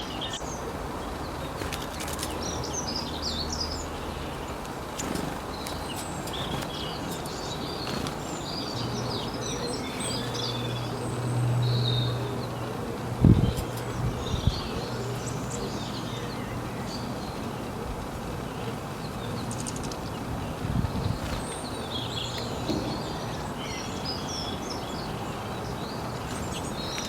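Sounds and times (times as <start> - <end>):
small birds chirping: 0.0 - 27.0.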